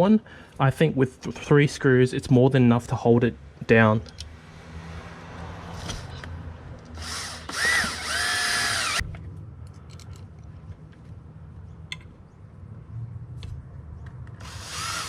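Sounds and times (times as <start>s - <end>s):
power drill whirring: 6.9s - 9.0s, 14.4s - 15.0s
faint clicks and handling: 9.2s - 11.2s.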